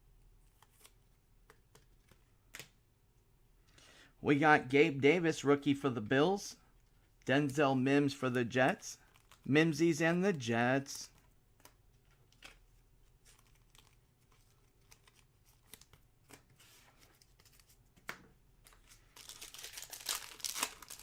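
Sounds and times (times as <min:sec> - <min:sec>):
wrapper crinkling: 0:09.0 - 0:09.5, 0:19.1 - 0:21.0.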